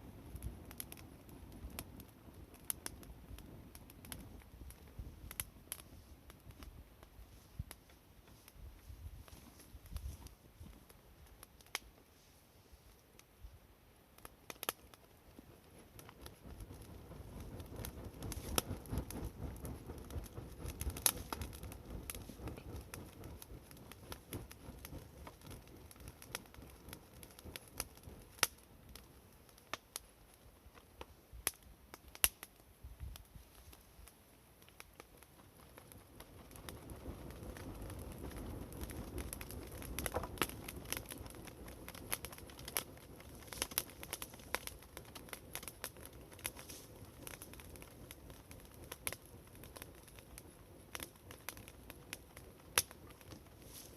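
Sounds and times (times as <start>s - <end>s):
campfire crackling and popping: 0.0s - 53.9s
low rushing of fire: 0.0s - 53.9s.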